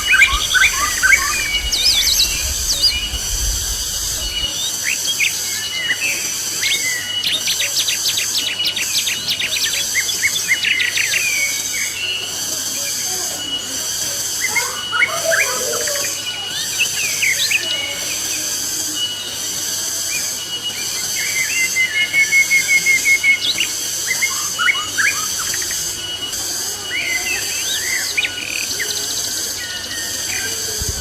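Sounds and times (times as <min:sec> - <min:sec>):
waterfall rushing hiss: 0:00.0 - 0:05.6
small birds chirping: 0:00.0 - 0:31.0.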